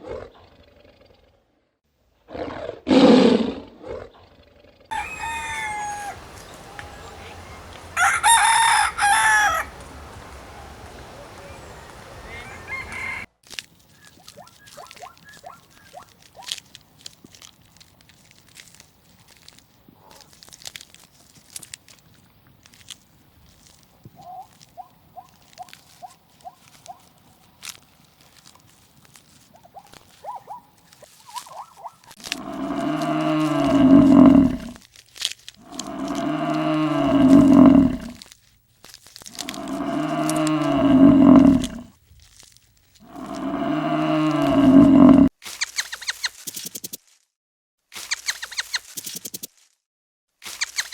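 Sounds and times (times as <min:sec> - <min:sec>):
cow mooing: 0:04.9 - 0:13.3, 0:32.2 - 0:34.8, 0:35.6 - 0:38.2, 0:39.3 - 0:41.9, 0:43.0 - 0:45.3
crunching and clicking: 0:04.9 - 0:47.2, 0:50.4 - 0:50.9.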